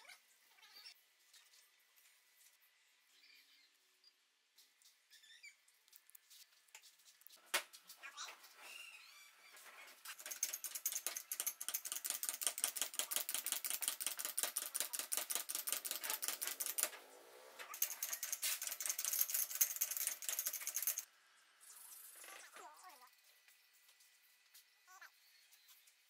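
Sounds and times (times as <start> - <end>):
rapid mechanical clicking: 10.1 - 17.1, 17.7 - 21.1.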